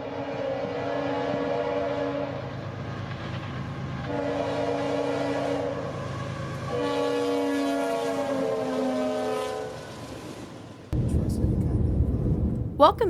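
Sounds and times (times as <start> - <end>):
locomotive air horn blasts: 0.0 - 2.5, 4.1 - 6.0, 6.6 - 9.9
train rumbling past: 0.0 - 13.0.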